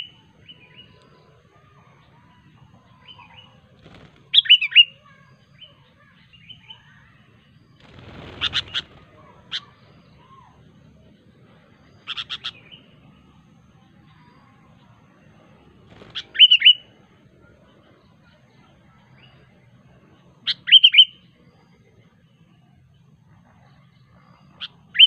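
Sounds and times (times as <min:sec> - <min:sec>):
bird whistled calls: 0:08.3 - 0:10.5, 0:16.1 - 0:16.9, 0:20.5 - 0:21.2.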